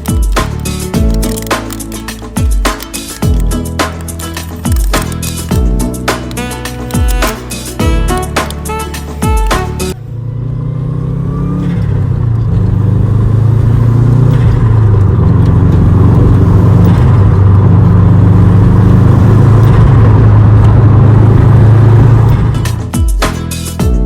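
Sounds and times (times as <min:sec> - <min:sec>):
car engine droning under load: 0:09.6 - 0:22.9.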